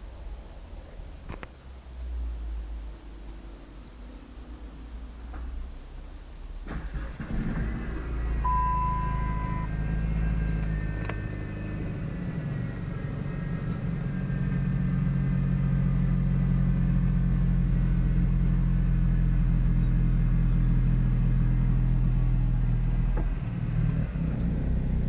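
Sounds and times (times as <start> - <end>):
car engine running: 6.7 - 25.0.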